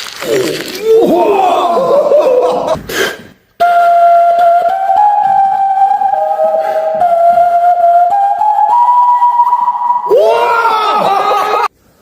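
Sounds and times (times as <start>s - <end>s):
flute-like melody: 3.6s - 11.1s.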